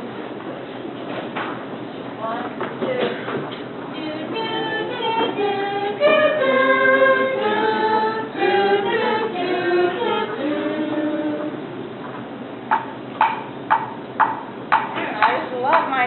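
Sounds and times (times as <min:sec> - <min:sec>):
voices singing a cappella: 0:03.9 - 0:11.8.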